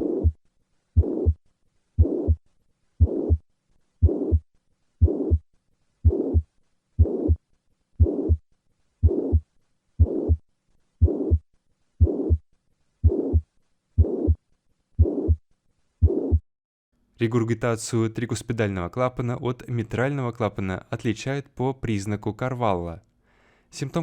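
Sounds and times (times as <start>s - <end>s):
heartbeat sounds: 0.0s - 0.4s, 1.0s - 1.4s, 2.0s - 2.4s, 3.0s - 3.4s, 4.0s - 7.4s, 8.0s - 8.4s, 9.0s - 10.4s, 11.0s - 12.4s, 13.0s - 14.4s, 15.0s - 15.4s, 16.0s - 16.4s
whooshing heart murmur: 1.0s - 1.4s, 3.0s - 3.4s, 5.0s - 5.4s, 7.0s - 7.4s, 8.0s - 8.4s.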